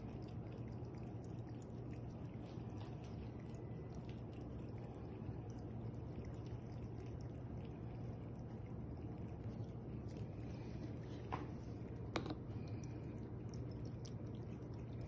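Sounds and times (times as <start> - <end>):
low pump hum: 0.0 - 15.0
water drips: 0.0 - 15.0
water trickling: 0.0 - 15.0.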